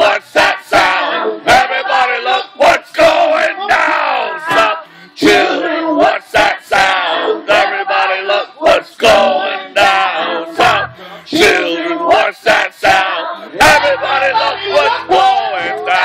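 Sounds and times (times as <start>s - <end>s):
man singing chant-like phrases: 0.0s - 16.0s
voices singing along: 0.0s - 16.0s.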